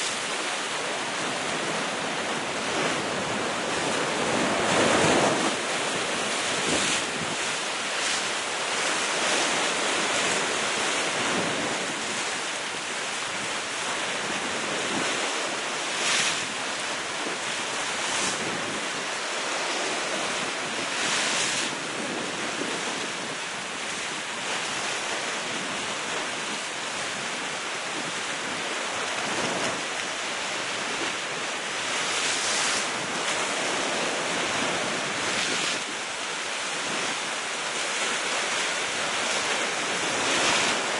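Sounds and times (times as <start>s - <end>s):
waves breaking on rocks: 0.0s - 40.9s
wind buffeting microphone: 0.8s - 12.4s, 16.0s - 29.9s.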